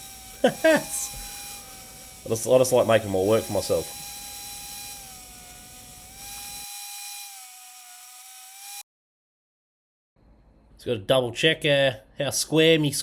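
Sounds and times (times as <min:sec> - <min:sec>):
power tool motor whining: 0:00.0 - 0:08.8.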